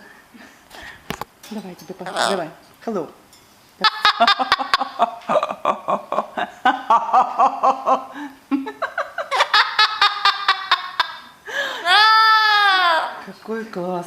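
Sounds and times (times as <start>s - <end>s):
laughter in pitched bursts: 3.8s - 12.7s.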